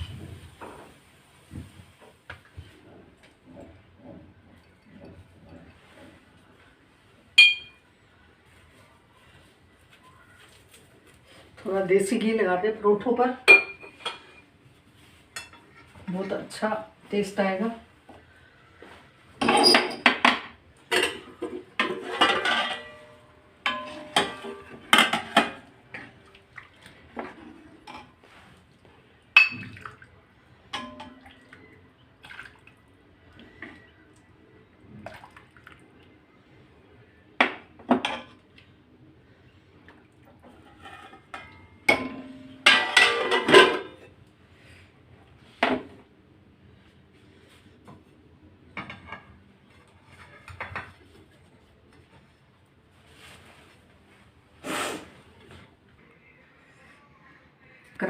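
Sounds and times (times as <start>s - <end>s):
spoons and dishes clinking: 20.9s - 25.6s, 30.8s - 31.2s.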